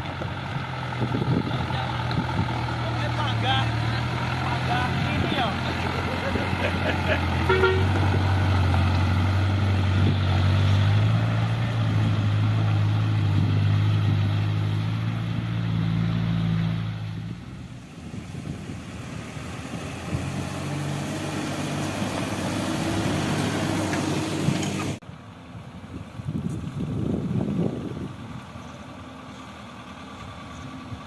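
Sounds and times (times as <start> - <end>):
heavy machinery engine running: 0.0 - 16.6.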